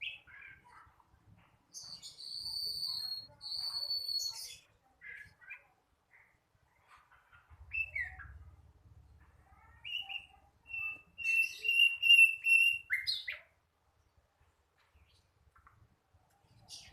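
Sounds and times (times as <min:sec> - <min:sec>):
young bird singing chirps: 0:01.7 - 0:05.7, 0:07.6 - 0:08.5, 0:09.7 - 0:13.6.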